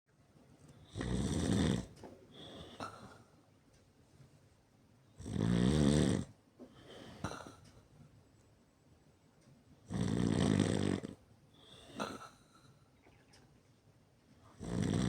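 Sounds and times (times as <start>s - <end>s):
person snoring loudly: 5.2s - 6.3s, 9.9s - 11.2s, 14.6s - 15.0s
soft breath: 6.6s - 7.8s, 11.6s - 12.9s.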